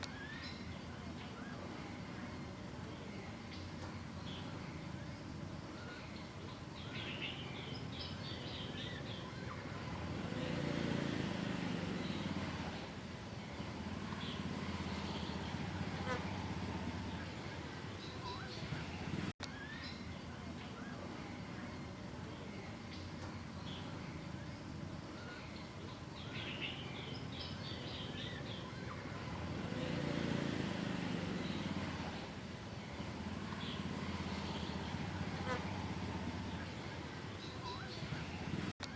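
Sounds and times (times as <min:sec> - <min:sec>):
small bird chirping: 0:00.0 - 0:10.6, 0:11.8 - 0:30.0
low rumble of passing vehicle: 0:00.2 - 0:19.4, 0:20.1 - 0:38.8.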